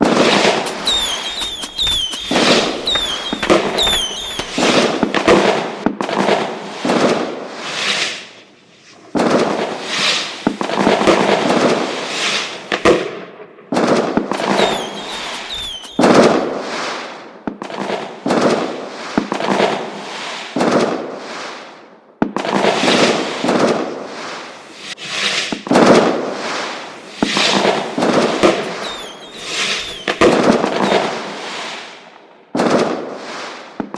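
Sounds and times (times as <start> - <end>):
fireworks whistling shrieks: 0.4 - 5.6, 14.3 - 16.8, 28.4 - 31.5
fireworks bangs and crackling: 0.4 - 6.3, 14.3 - 16.8, 27.6 - 31.6.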